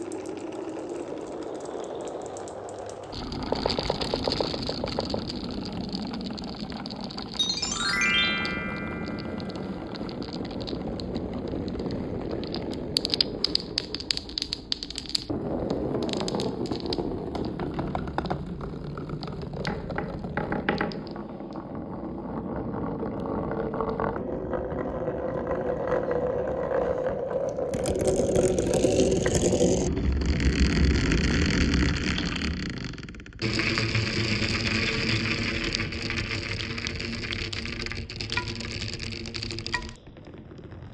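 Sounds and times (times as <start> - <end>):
marbles rolling on a track: 0.0 - 7.4, 9.1 - 24.0, 31.5 - 40.8
marbles clicking together: 38.2 - 38.9, 39.5 - 40.0.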